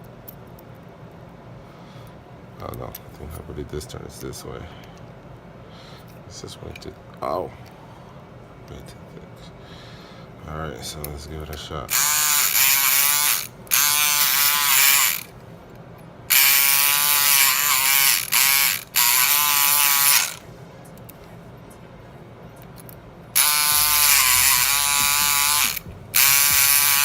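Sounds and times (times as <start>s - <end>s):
electric pick gun buzzing: 11.9s - 15.4s, 16.3s - 20.4s, 23.4s - 27.0s.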